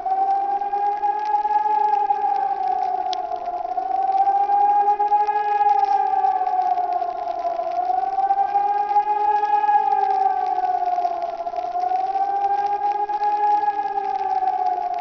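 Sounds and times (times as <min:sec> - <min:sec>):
distant sirens: 0:00.0 - 0:15.0
electronic siren wailing: 0:00.0 - 0:15.0.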